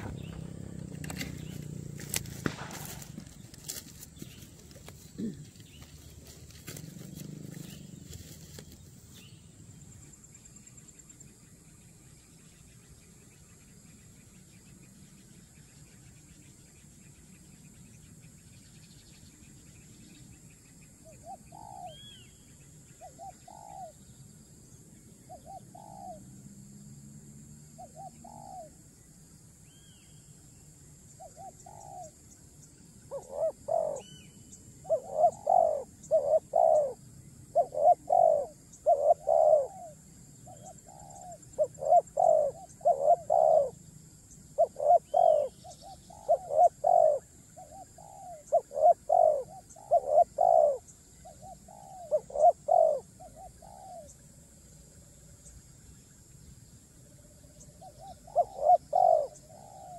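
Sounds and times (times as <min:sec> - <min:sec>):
bird cooing: 0:00.0 - 0:08.7, 0:21.1 - 0:22.4, 0:23.0 - 0:24.0, 0:25.3 - 0:26.3, 0:27.8 - 0:28.8, 0:31.2 - 0:32.2, 0:33.0 - 0:43.8, 0:44.5 - 0:54.3, 0:57.5 - 0:59.9
high insect hiss: 0:00.0 - 0:59.9.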